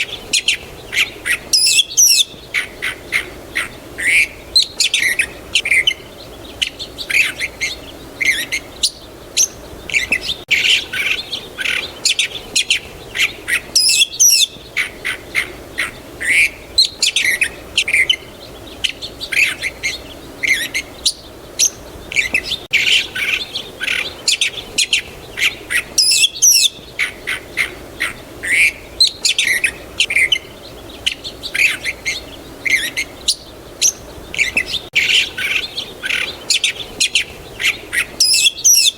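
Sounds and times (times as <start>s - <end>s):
faint steady hiss: 0.0s - 38.9s
songbirds chirping: 0.0s - 38.9s
rising and falling bird whistle: 1.6s - 2.3s, 13.8s - 14.5s, 26.0s - 26.8s, 38.2s - 38.9s.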